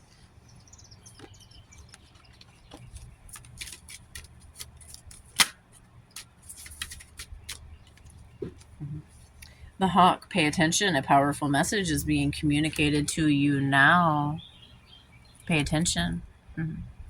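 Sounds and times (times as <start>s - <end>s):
low steady hum: 0.0s - 17.0s
cards shuffling and snapping: 1.2s - 8.7s.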